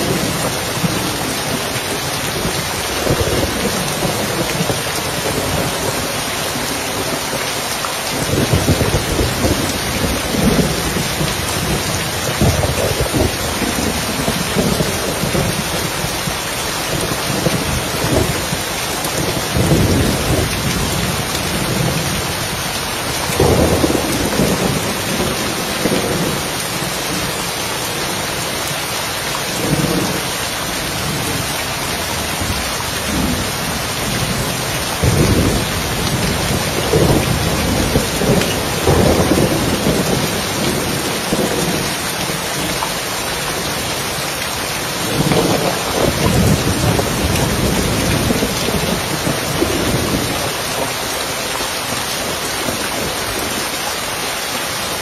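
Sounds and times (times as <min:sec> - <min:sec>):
rain falling on a roof: 0:00.0 - 0:55.0
thunder rumbling: 0:08.1 - 0:28.4, 0:32.1 - 0:42.8, 0:44.8 - 0:51.0.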